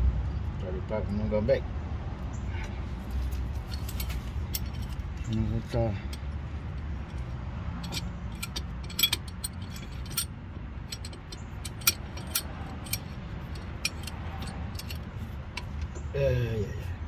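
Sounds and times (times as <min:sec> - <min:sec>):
metallic clicks of hand tools: 0:07.8 - 0:10.3, 0:10.9 - 0:16.0.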